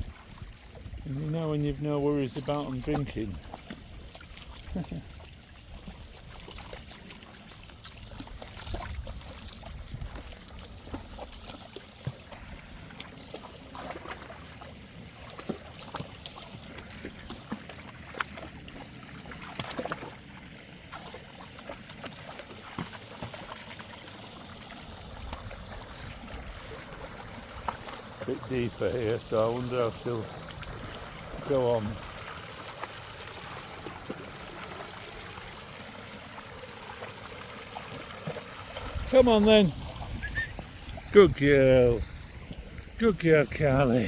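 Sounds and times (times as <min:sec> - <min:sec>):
stream trickling: 0:00.0 - 0:44.0
short splashes and clicks: 0:00.1 - 0:44.0.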